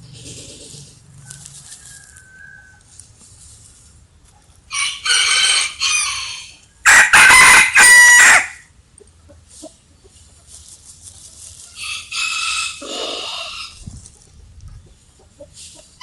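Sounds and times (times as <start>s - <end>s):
rooster crowing: 1.2s - 2.9s, 4.7s - 8.6s.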